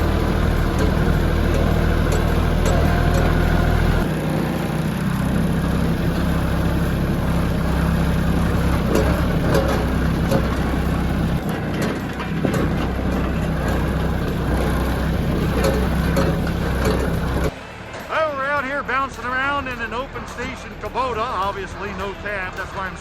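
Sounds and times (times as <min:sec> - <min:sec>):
rattles and knocks: 0:00.0 - 0:17.5
tractor diesel engine running: 0:00.0 - 0:23.0.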